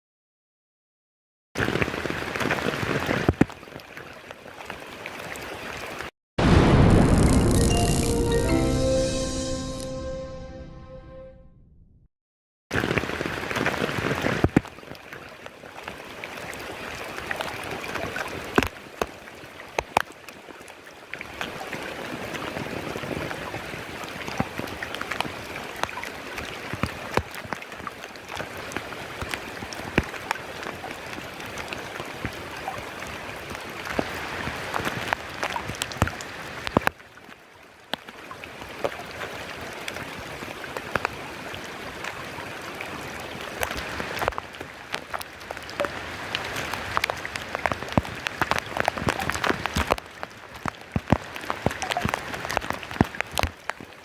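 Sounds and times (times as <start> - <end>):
heavy rain falling: 6.4 - 8.3, 45.2 - 53.5
raindrops striking close by: 21.3 - 54.0.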